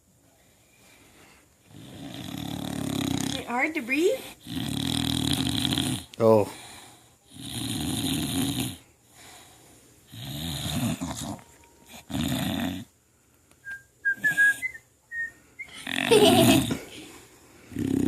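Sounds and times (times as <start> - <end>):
dog snoring: 1.7 - 3.6, 4.2 - 6.2, 7.2 - 8.9, 10.1 - 12.9, 17.7 - 18.0.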